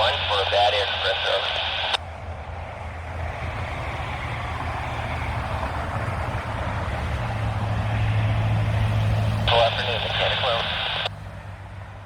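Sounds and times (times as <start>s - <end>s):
large engine humming: 0.0s - 12.0s.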